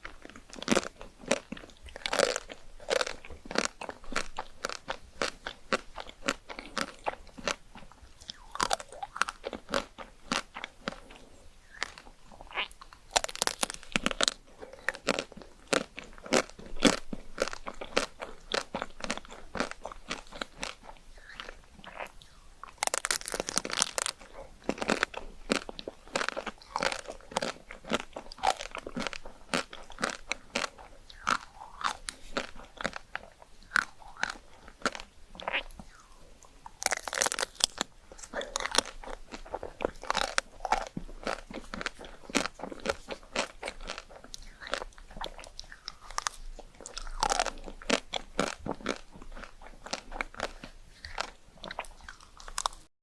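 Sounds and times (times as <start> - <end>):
ice cream crunching and chewing: 0.0 - 52.9.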